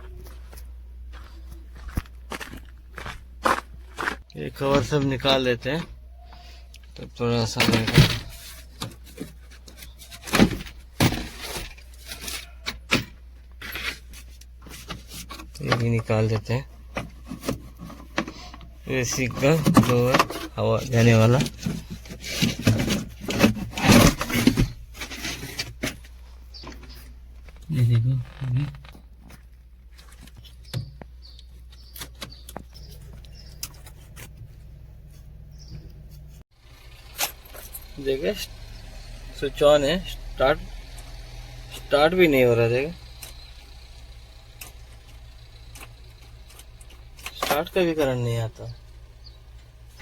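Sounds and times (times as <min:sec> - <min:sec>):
birds chirping: 0:04.3 - 0:08.8, 0:26.2 - 0:29.2, 0:30.2 - 0:36.4, 0:37.5 - 0:50.0
plastic panels clacking and knocking: 0:07.5 - 0:14.0, 0:14.7 - 0:26.8.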